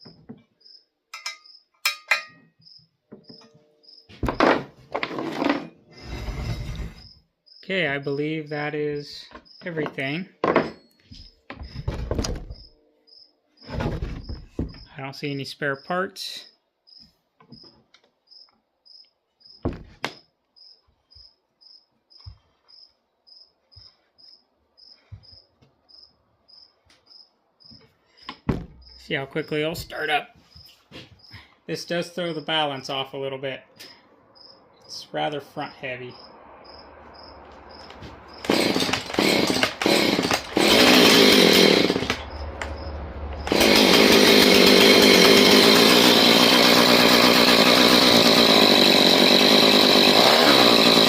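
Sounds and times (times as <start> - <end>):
crickets chirping: 0.0 - 1.7, 2.6 - 4.2, 6.0 - 9.8, 11.1 - 14.9, 15.8 - 19.7, 20.6 - 29.6, 30.6 - 31.4, 33.9 - 35.0, 35.6 - 38.5, 42.2 - 43.2
metal tools clinking: 1.1 - 2.5
loud knocks: 28.4 - 28.9.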